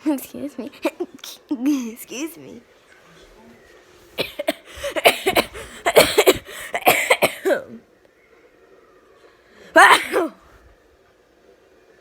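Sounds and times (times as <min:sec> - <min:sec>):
child coughing: 0:04.2 - 0:07.8, 0:09.8 - 0:10.4.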